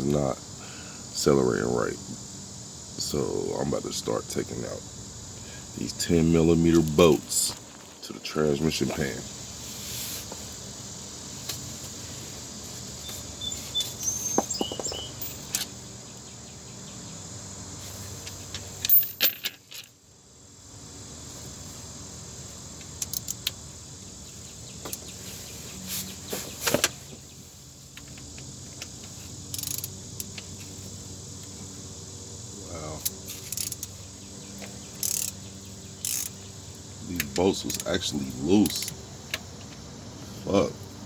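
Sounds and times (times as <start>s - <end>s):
socket wrench clicking on bolts: 14.4s - 15.7s, 22.8s - 23.6s, 28.0s - 30.5s, 33.0s - 34.0s, 34.9s - 35.4s, 36.0s - 38.0s, 38.6s - 39.4s.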